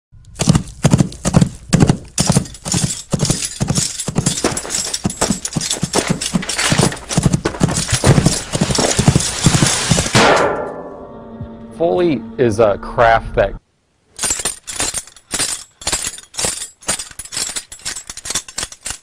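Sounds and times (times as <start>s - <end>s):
horse hooves clip-clopping: 0.3s - 10.2s, 14.2s - 19.0s.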